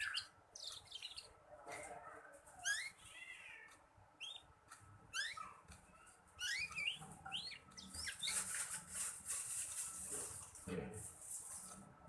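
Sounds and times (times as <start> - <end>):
canary twittering: 0.0 - 1.9, 2.5 - 8.6.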